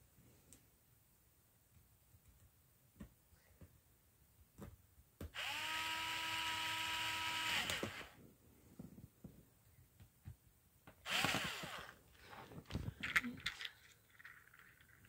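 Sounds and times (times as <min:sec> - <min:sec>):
electric screwdriver whirring: 0:05.4 - 0:08.2, 0:11.1 - 0:12.0.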